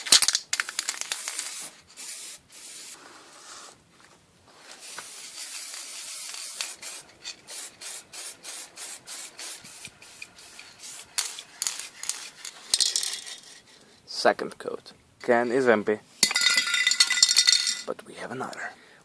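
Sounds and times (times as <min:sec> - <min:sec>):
aerosol spray can hissing: 0:00.7 - 0:03.0, 0:04.8 - 0:12.7.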